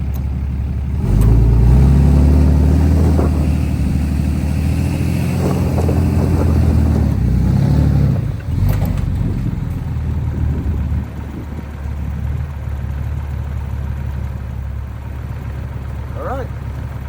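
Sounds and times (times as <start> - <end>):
tractor diesel engine working: 0.0 - 17.0.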